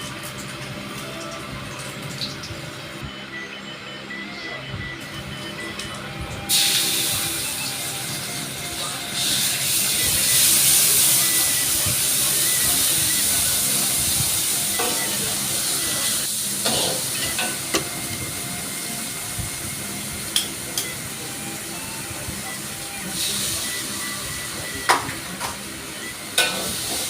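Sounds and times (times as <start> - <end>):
food frying in hot oil: 0.0 - 3.0, 6.5 - 27.0.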